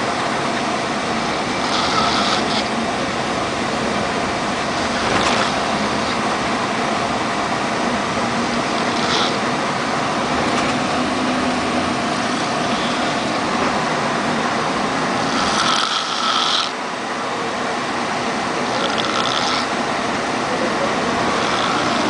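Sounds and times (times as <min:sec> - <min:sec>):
vehicle engine drone: 0:00.0 - 0:22.0
man snoring: 0:01.6 - 0:02.8, 0:08.4 - 0:09.5, 0:15.2 - 0:16.8, 0:18.7 - 0:19.8, 0:21.2 - 0:22.0.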